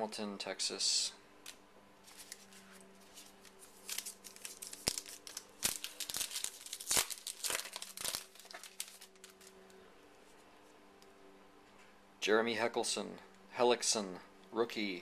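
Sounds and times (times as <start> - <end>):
wrapper crinkling and tearing: 2.0 - 9.6.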